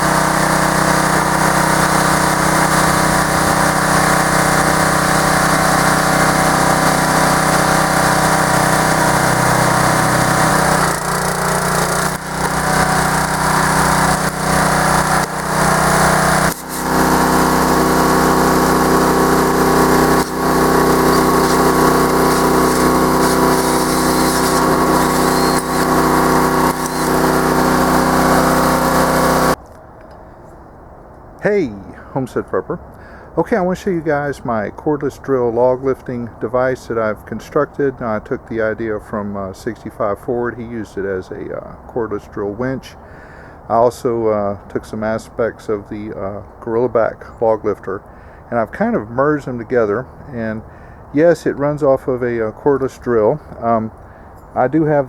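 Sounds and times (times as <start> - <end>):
small gasoline engine running: 0.0 - 29.6.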